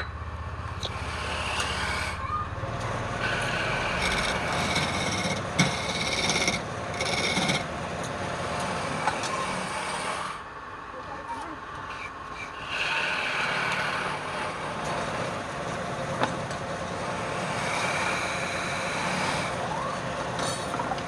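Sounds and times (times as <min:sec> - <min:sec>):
rasp scraping wood: 0:00.8 - 0:02.2, 0:03.2 - 0:07.8, 0:17.0 - 0:19.7.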